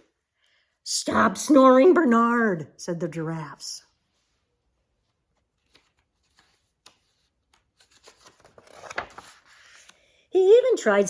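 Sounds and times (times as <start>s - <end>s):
book pages rustling: 4.0s - 10.3s.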